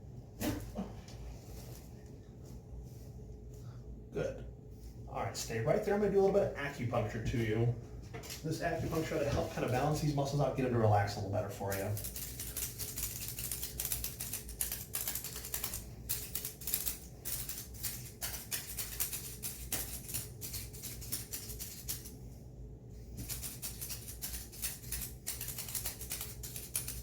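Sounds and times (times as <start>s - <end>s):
low steady hum: 0.0s - 27.0s
rapid irregular device clicking: 11.7s - 22.1s, 23.2s - 27.0s.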